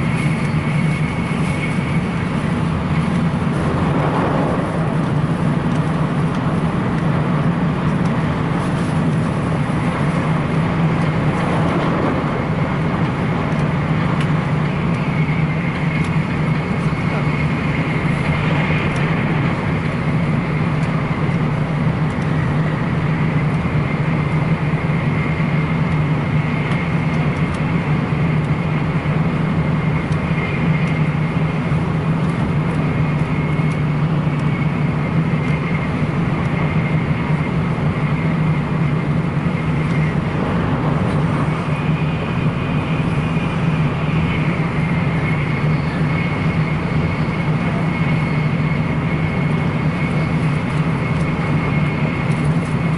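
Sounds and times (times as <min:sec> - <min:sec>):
train cabin low rumble: 0:00.0 - 0:52.9
faint high whine: 0:28.6 - 0:52.9.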